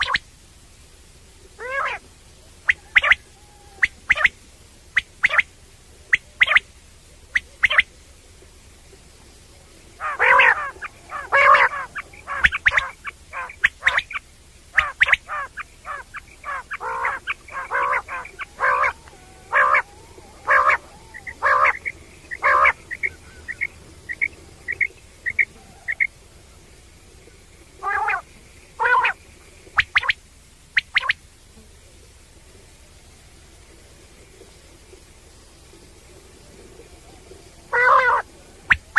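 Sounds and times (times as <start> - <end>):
faint quail pips: 0.0 - 0.3, 1.5 - 31.2, 36.0 - 38.9
quail calling: 0.0 - 0.3, 1.6 - 6.7, 7.3 - 7.9, 9.9 - 26.6, 27.8 - 31.2, 37.7 - 38.9.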